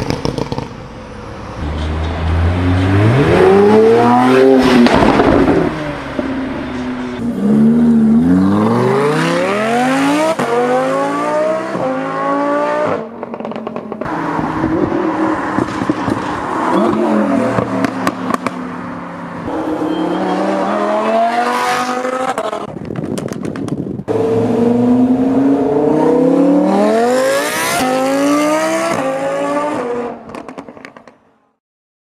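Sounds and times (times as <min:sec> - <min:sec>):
car engine revving: 0:00.0 - 0:22.7, 0:24.1 - 0:30.4
exhaust crackles and pops: 0:22.4 - 0:24.1.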